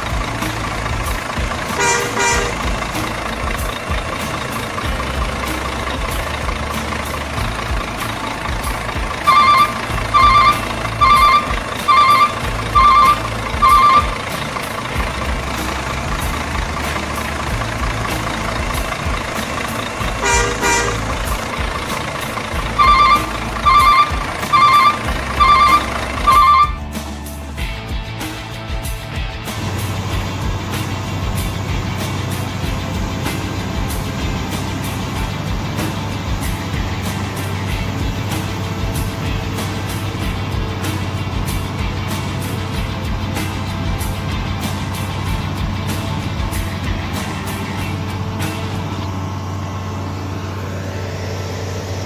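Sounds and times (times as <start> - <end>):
electronic reversing beeper: 0.0 - 27.0
simulated truck engine running: 0.0 - 52.0
short tone blips: 9.3 - 14.2, 22.8 - 26.8.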